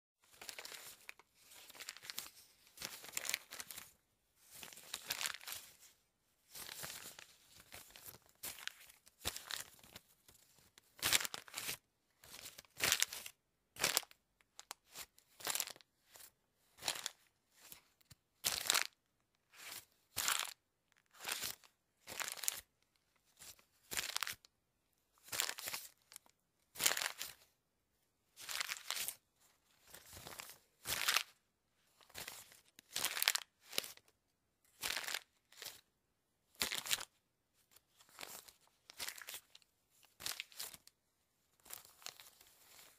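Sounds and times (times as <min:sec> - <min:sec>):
paper crinkling: 0:00.3 - 0:03.9, 0:04.5 - 0:05.9, 0:41.6 - 0:42.9.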